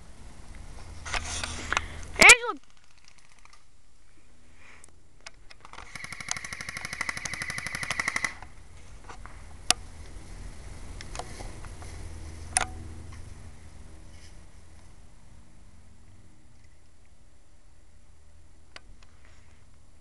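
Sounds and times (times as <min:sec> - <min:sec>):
airsoft gun full-auto burst: 0:05.7 - 0:08.5.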